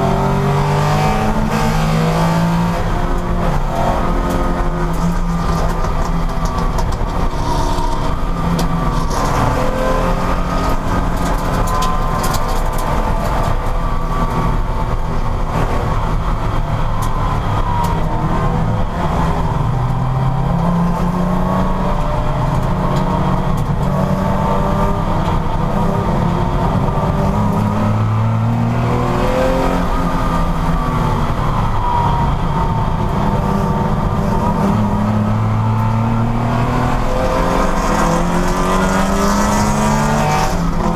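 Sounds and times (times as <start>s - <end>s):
racing car engine revving: 0.0s - 40.9s.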